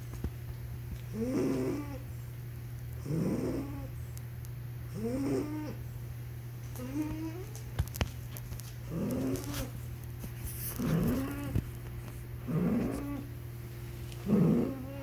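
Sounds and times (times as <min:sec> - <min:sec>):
steady low hum: 0:00.0 - 0:15.0
pet snoring: 0:01.1 - 0:02.1, 0:03.0 - 0:03.9, 0:04.9 - 0:05.8, 0:08.9 - 0:09.7, 0:10.7 - 0:11.6, 0:12.4 - 0:13.3, 0:14.2 - 0:15.0.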